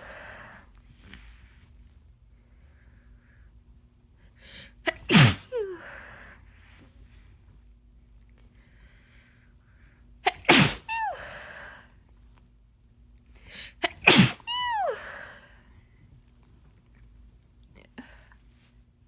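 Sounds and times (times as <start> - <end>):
woman sneezing: 4.8 - 5.9, 10.2 - 11.4, 13.7 - 15.3.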